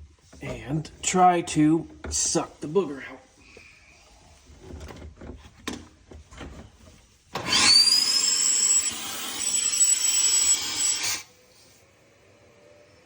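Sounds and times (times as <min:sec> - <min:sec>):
shop vac motor whine: 0:07.4 - 0:13.0.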